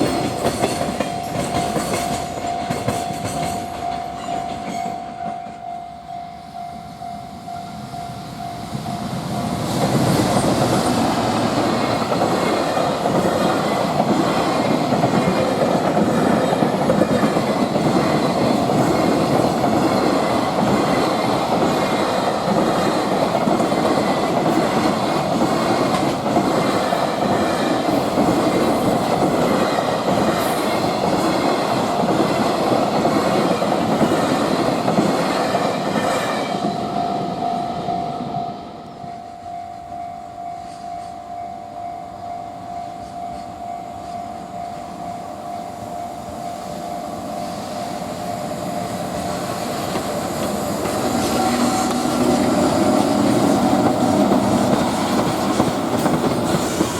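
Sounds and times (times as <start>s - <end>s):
freight train wheels clattering: 0.0s - 5.7s, 8.8s - 37.4s, 48.8s - 56.9s.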